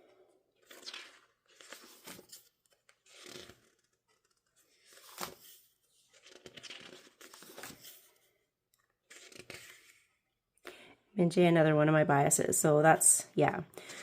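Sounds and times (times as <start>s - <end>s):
paper page swishes: 0.6s - 8.1s, 9.1s - 10.0s.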